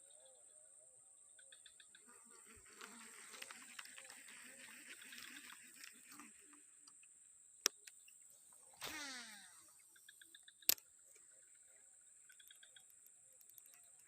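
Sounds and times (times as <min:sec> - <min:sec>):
sharp clicks: 0:12.3 - 0:14.0.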